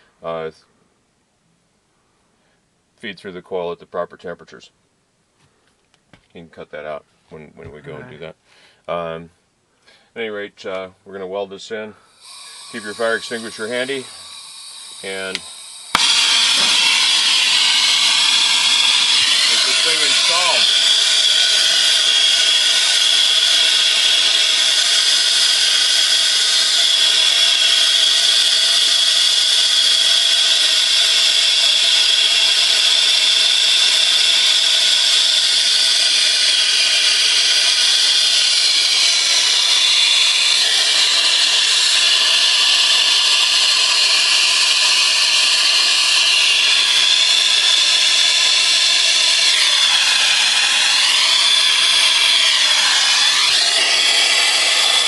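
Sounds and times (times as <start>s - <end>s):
torch flame hissing: 12.0s - 55.0s.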